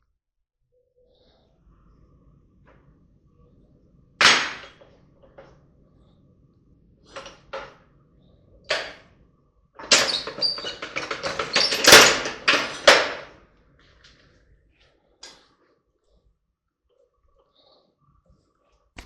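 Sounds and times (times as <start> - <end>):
metal knocking and clanking: 4.2 - 5.6, 8.7 - 9.1, 9.8 - 13.4.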